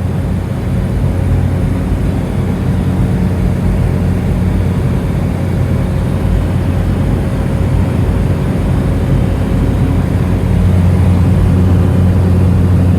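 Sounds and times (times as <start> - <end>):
turboprop engine droning: 0.0 - 12.9.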